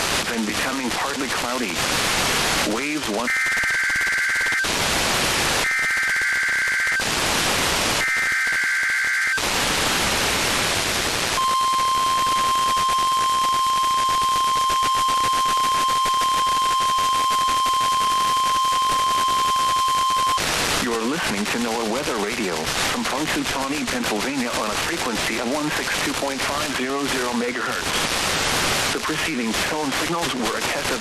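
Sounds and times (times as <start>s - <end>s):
radio static hiss: 0.0s - 31.0s
weather radio alert tone: 2.6s - 4.7s, 11.3s - 21.4s
warbling two-tone digital data bursts: 11.4s - 20.4s.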